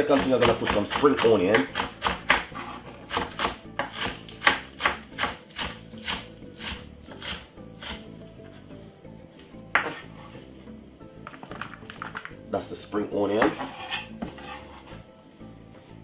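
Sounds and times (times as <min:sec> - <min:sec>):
knife chopping on cutting board: 0:00.0 - 0:08.0, 0:09.8 - 0:10.1.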